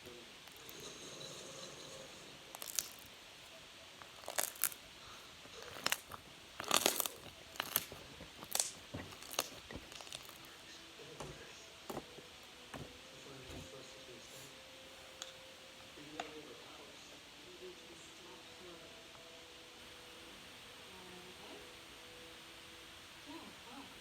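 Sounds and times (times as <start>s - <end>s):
sharp clicks and crackles: 2.5s - 3.2s, 4.0s - 10.6s.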